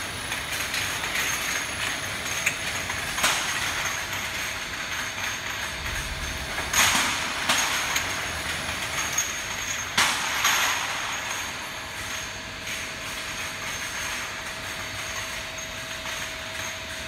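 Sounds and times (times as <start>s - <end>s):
washing machine mechanical hum: 0.0s - 17.0s
sharp metal clanks: 1.0s - 16.9s.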